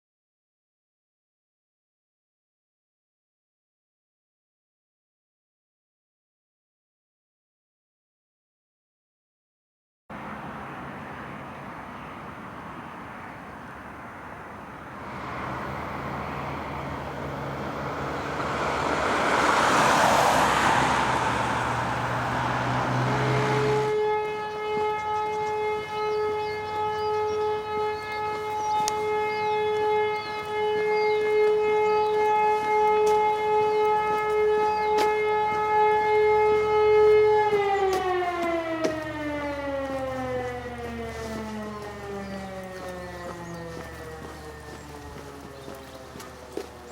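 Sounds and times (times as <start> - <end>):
electromechanical siren tone: 21.3 - 46.9
bird chirps: 42.2 - 46.9.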